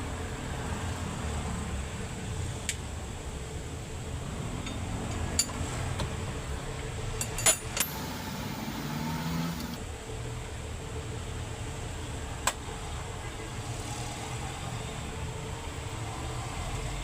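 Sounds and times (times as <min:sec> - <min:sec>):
sharp metallic clinks: 0:07.2 - 0:08.6
low mechanical running: 0:07.7 - 0:10.2.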